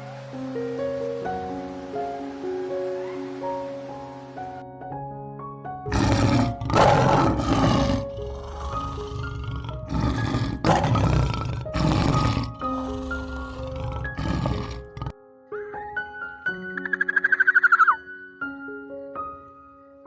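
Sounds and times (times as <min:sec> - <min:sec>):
light background music: 0:00.0 - 0:20.0
large animal roaring: 0:05.9 - 0:15.1.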